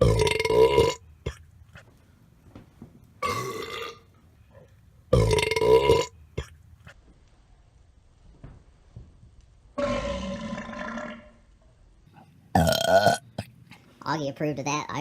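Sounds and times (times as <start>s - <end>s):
loud belches: 0.0s - 1.4s, 3.2s - 4.0s, 5.1s - 6.5s, 9.8s - 11.4s, 12.5s - 13.5s.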